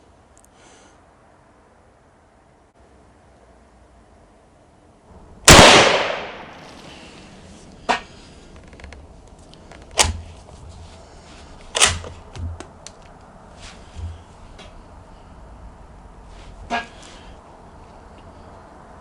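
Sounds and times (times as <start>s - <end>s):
rifle shot: 5.5s - 6.8s
faint sharp cracks: 5.5s - 7.0s.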